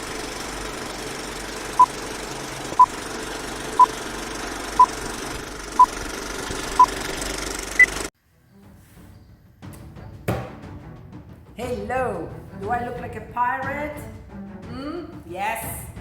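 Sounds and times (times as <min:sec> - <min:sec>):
mechanical whirr: 0:00.0 - 0:08.1.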